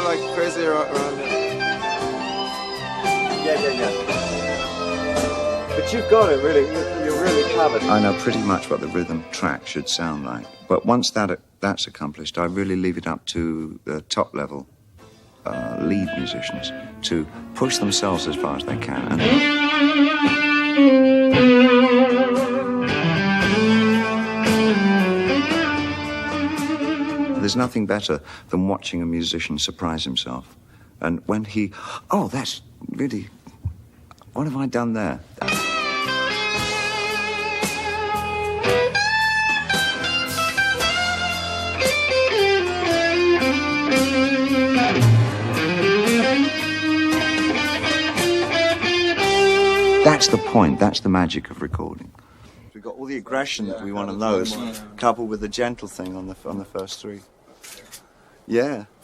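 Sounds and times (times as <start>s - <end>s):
electric guitar solo: 0.0s - 10.7s, 15.5s - 27.5s, 35.4s - 51.0s.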